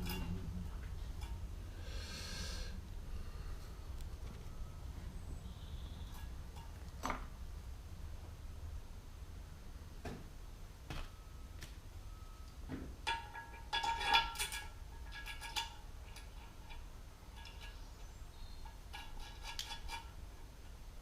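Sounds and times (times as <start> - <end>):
metal tools clinking: 0.0 - 0.5, 13.1 - 20.2.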